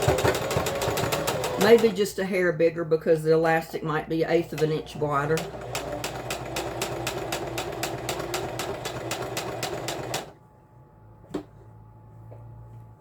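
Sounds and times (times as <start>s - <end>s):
electric sewing machine stitching: 0.0s - 2.0s, 4.5s - 10.4s.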